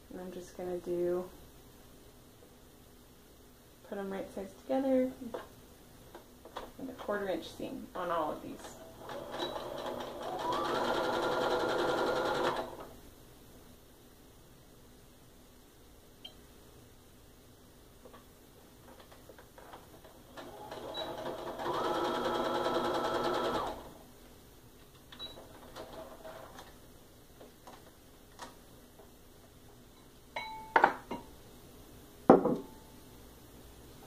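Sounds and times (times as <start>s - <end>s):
sewing machine stitching: 8.6s - 12.9s, 19.7s - 24.0s, 25.3s - 26.7s.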